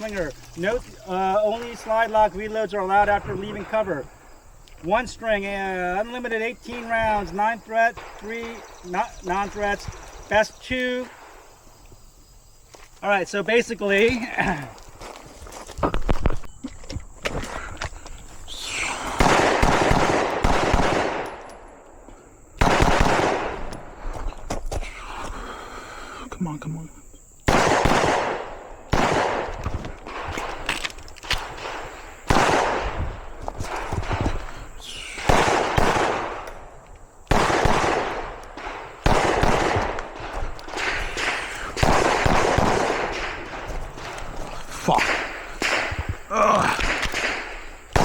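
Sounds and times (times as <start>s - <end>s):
faint gunshots: 18.8s - 21.4s, 22.6s - 23.7s, 27.5s - 30.6s, 31.4s - 36.5s, 37.3s - 44.2s, 44.9s - 46.1s, 46.8s - 48.0s
pistol rapid fire: 19.2s - 21.4s, 22.6s - 23.7s, 27.5s - 29.5s, 31.5s - 33.0s, 35.1s - 36.5s, 37.3s - 43.7s, 47.0s - 48.0s.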